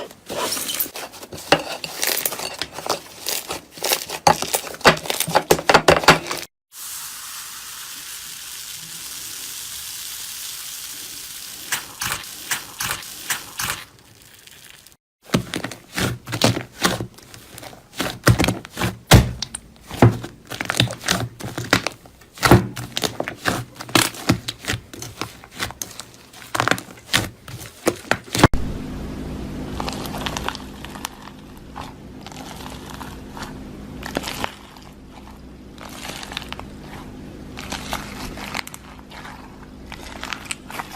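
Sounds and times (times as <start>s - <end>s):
slime squishes: 2.8s - 5.3s, 11.7s - 28.4s, 29.8s - 40.9s
faint hum: 28.5s - 40.9s.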